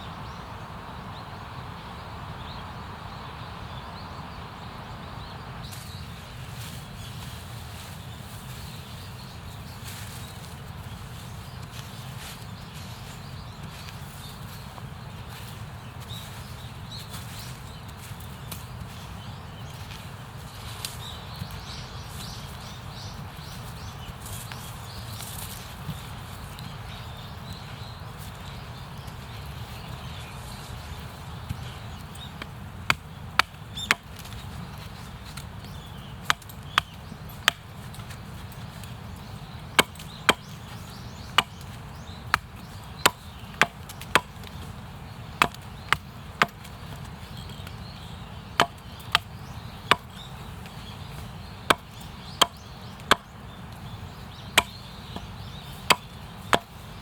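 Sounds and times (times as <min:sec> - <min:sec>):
wood being chopped: 0:31.3 - 0:57.0.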